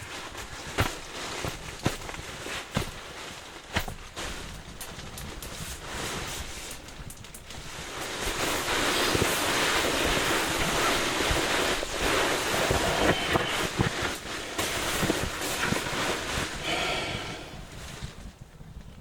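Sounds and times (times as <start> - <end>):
wind buffeting microphone: 9.0 - 19.0.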